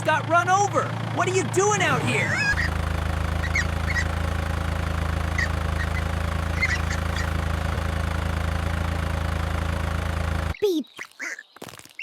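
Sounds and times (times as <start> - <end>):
cartoon tractor engine idling: 0.0 - 10.8
high duck calls: 3.4 - 4.2, 5.3 - 7.4.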